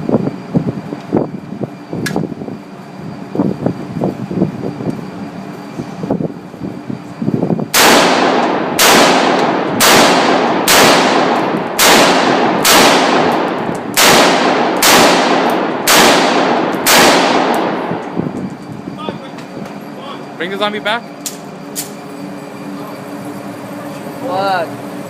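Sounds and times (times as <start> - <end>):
rifle shots echoing: 7.7 - 18.0.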